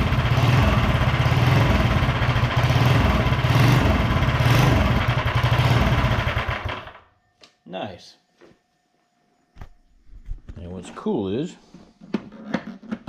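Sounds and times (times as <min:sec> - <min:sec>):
small engine running: 0:00.0 - 0:07.0.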